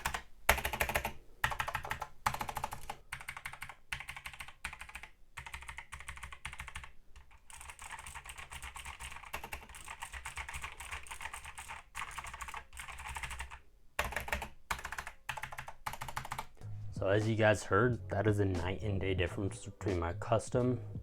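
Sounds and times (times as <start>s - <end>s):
typing on mechanical keyboard: 0.0s - 16.6s.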